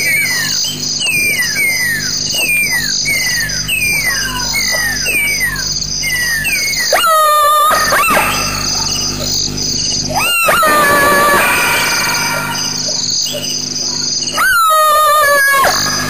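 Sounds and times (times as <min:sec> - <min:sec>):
wavering animal cry: 0:01.6 - 0:16.0
jackal yelping: 0:02.4 - 0:09.4, 0:10.1 - 0:13.5, 0:14.3 - 0:16.0.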